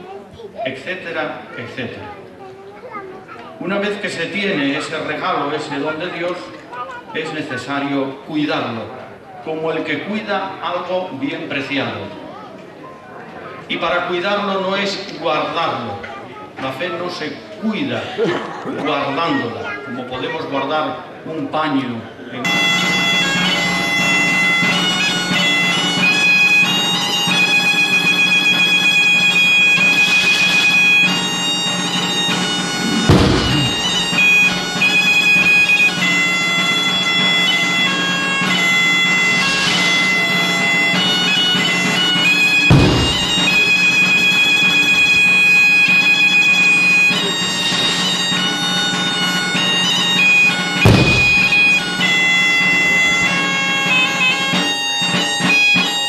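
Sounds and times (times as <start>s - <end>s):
bagpipe playing over drone: 22.4s - 56.0s
loud low thumps: 32.4s - 34.7s, 42.7s - 43.9s, 50.8s - 52.0s.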